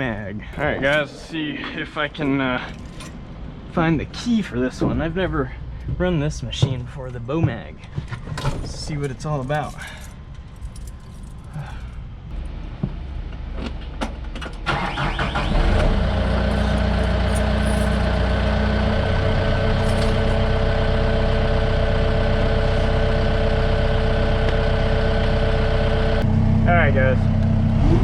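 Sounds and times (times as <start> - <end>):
diesel engine starting and idling: 14.2 - 28.0.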